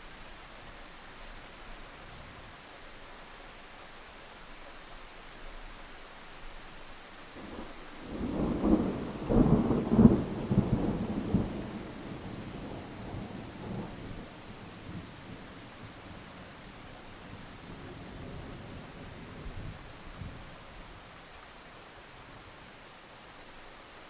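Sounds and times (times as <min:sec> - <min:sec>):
rain hissing: 0:00.0 - 0:24.0
thunder rumbling and cracking: 0:07.5 - 0:16.2.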